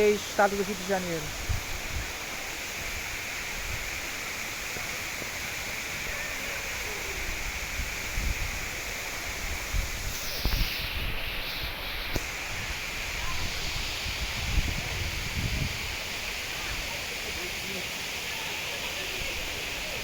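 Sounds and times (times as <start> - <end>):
waterfall rushing: 0.0 - 20.0
wind buffeting microphone: 1.2 - 2.2, 7.2 - 16.2.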